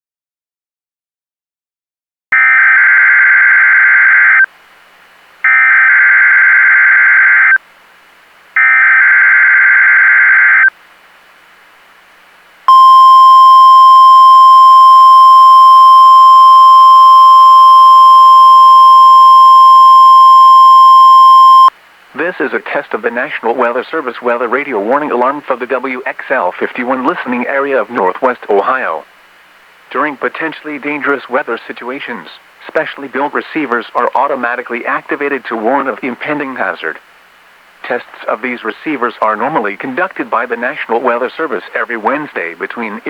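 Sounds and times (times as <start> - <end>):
loud steady alarm tone: 2.4 - 4.5, 5.5 - 7.6, 8.6 - 10.7.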